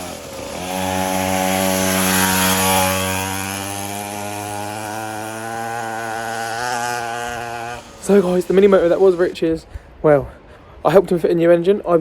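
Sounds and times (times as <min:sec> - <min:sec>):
small two-stroke engine buzzing: 0:00.0 - 0:09.4.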